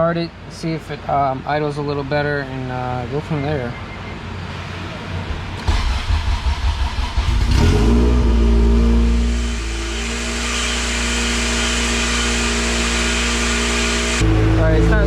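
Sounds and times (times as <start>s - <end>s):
car engine cranking and idling: 5.0s - 15.0s.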